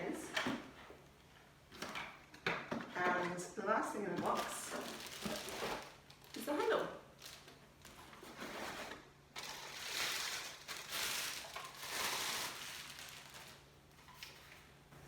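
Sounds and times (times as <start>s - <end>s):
packaging rustling and crinkling: 4.2s - 14.8s.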